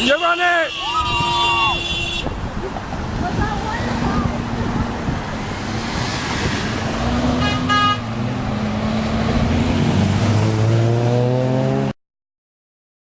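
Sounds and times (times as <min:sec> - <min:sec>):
car horn honking: 0:00.0 - 0:02.4, 0:07.3 - 0:08.2
road traffic passing: 0:00.0 - 0:12.0
vehicle engine accelerating: 0:02.7 - 0:12.0.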